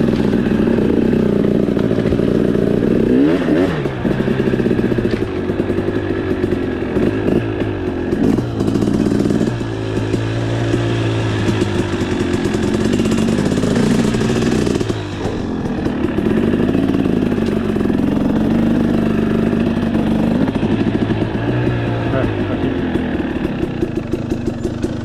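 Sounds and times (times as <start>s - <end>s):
two-stroke dirt bike engine revving: 0.0s - 25.0s.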